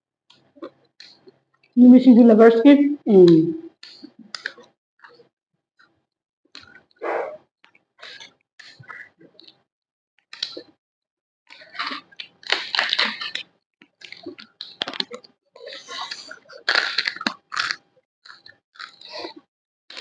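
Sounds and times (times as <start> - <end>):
crunchy food being chewed: 3.8 - 5.2, 10.3 - 10.8, 11.5 - 20.0.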